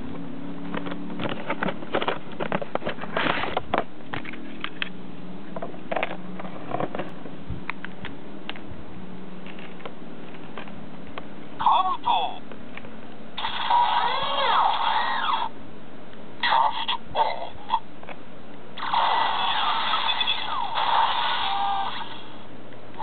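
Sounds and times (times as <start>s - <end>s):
low hum: 12.4s - 23.0s.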